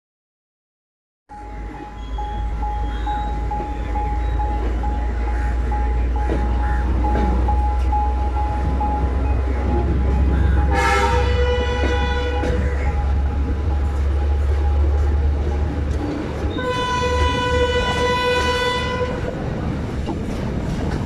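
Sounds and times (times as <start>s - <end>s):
pulsing high tone: 1.3s - 18.0s
train rumbling: 1.3s - 21.0s
locomotive horn: 1.4s - 19.4s.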